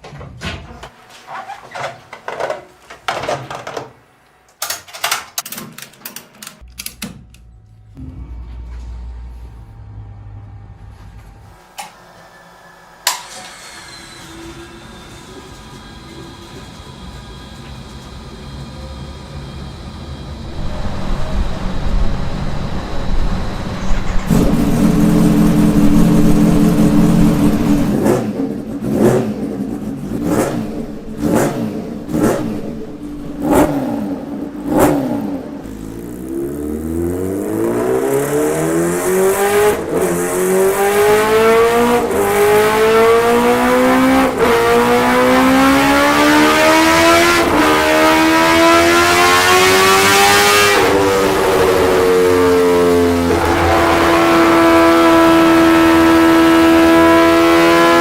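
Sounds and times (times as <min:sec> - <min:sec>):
motorcycle engine idling and revving: 0:18.3 - 0:58.0.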